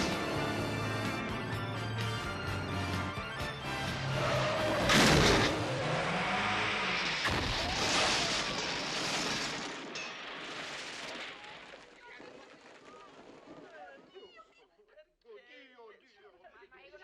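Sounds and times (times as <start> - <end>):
film score music: 0.0 - 6.1
car engines revving: 0.0 - 7.8
tyres skidding: 0.0 - 9.9
loud crash: 4.8 - 5.6, 6.9 - 11.5.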